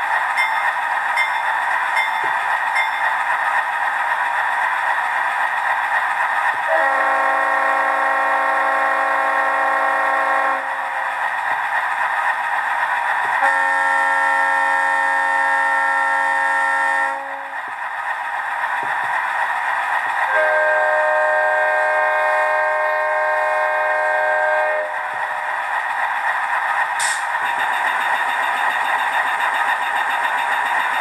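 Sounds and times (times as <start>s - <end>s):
diesel air horn blasts: 6.7s - 10.8s, 13.4s - 17.5s, 20.3s - 25.0s.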